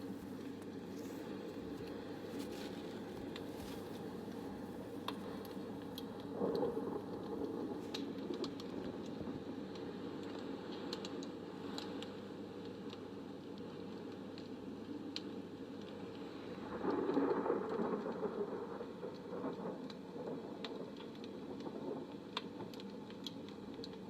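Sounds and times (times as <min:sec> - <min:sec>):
small clicks and crackles: 0:00.0 - 0:24.0
steady low background noise: 0:00.0 - 0:24.0.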